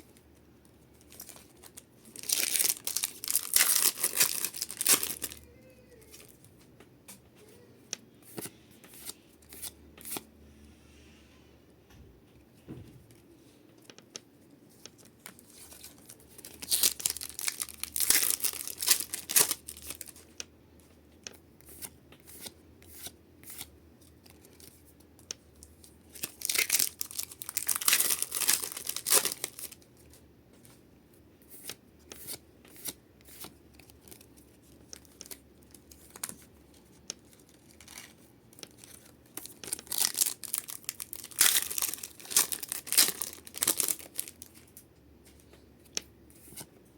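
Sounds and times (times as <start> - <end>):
wrappers tearing and crinkling: 1.0 - 5.4, 15.0 - 20.2, 26.1 - 29.8, 37.2 - 44.7.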